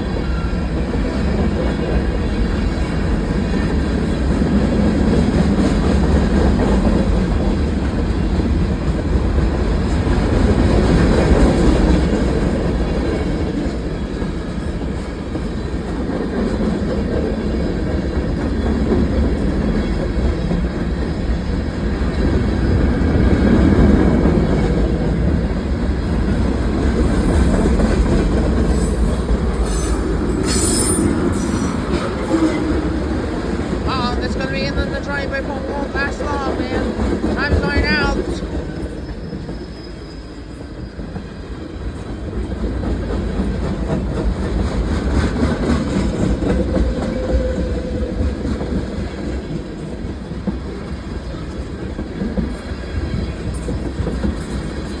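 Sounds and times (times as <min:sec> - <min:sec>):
train wheels rumbling on rails: 0:00.0 - 0:55.0
high wheel squeal: 0:28.7 - 0:32.7.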